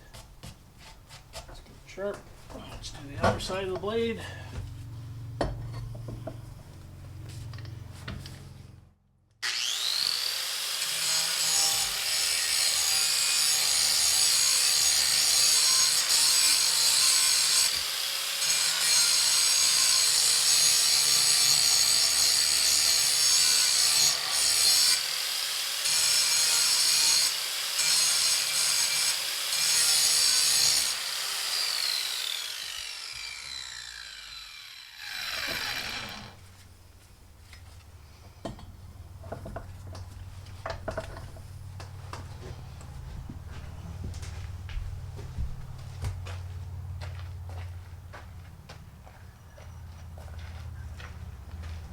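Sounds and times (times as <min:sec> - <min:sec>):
electric grinder grinding metal blade: 0:09.4 - 0:36.6.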